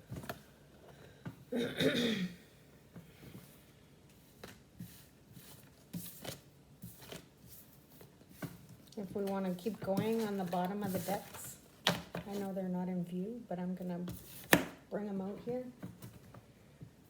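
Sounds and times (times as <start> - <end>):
woman clearing her throat: 1.5 - 2.4
soft clicks and rustles: 5.5 - 12.5.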